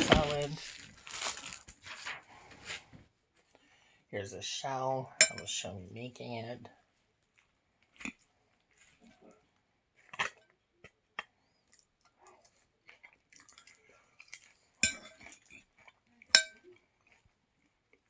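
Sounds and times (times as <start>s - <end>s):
cutlery and dishes clinking: 5.2s - 5.6s, 14.8s - 15.4s, 16.4s - 16.6s.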